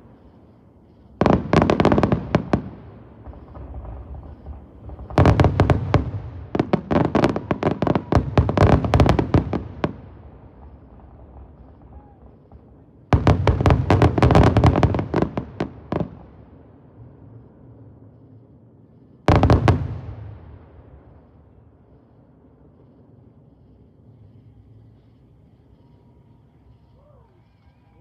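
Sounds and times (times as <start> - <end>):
fireworks crackling bangs: 0.0 - 28.0.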